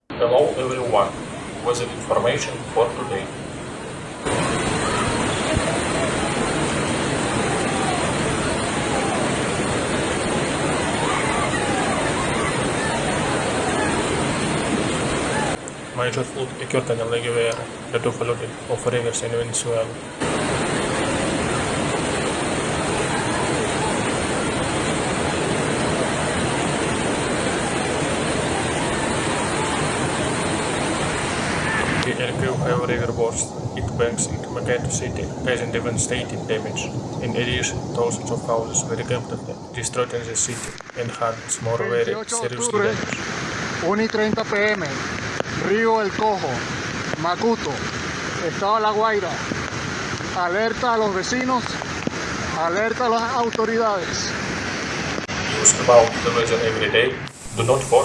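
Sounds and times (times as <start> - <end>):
floodwater rushing: 0.0 - 32.4, 40.2 - 41.7, 57.3 - 58.0.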